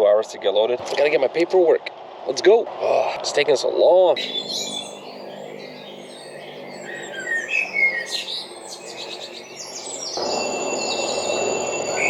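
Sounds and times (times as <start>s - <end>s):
rushing wind-like noise: 1.0s - 6.7s, 9.9s - 12.0s
small birds chirping: 4.2s - 12.0s.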